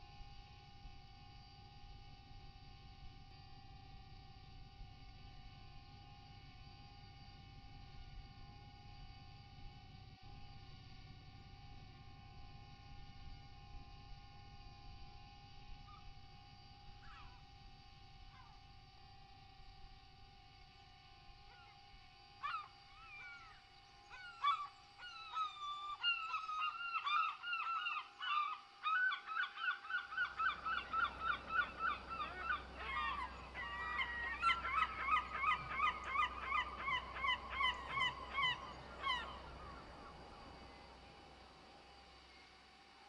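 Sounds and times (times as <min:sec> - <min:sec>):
flock of birds calling: 0:17.0 - 0:17.4, 0:22.4 - 0:41.8.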